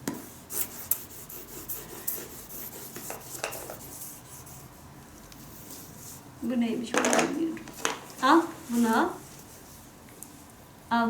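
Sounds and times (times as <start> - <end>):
crayon scribbling on paper: 0.2 - 4.9.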